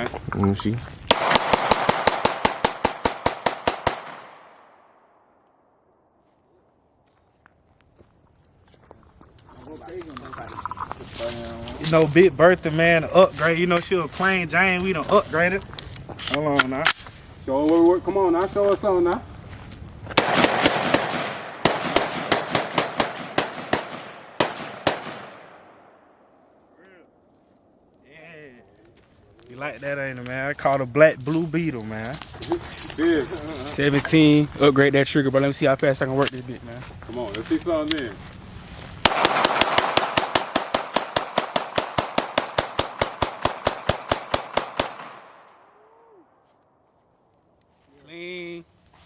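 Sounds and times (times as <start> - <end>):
pistol gunshots with echo: 1.1 - 5.1, 20.2 - 25.9, 39.0 - 45.5.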